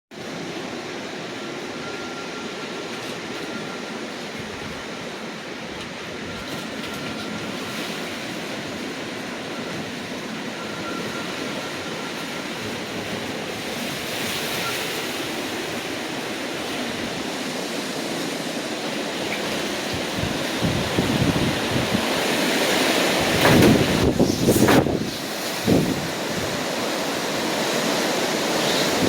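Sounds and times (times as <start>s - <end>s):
hurricane wind blowing: 0.1s - 29.0s
wind buffeting microphone: 4.1s - 7.6s, 19.3s - 29.0s.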